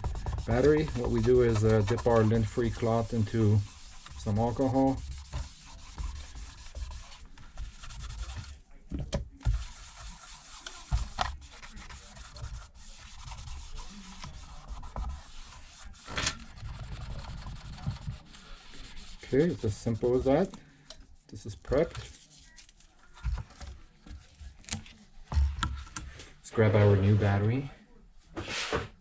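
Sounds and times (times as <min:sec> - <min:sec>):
cloth scrubbing inside housing: 0:00.0 - 0:08.6, 0:09.5 - 0:20.6.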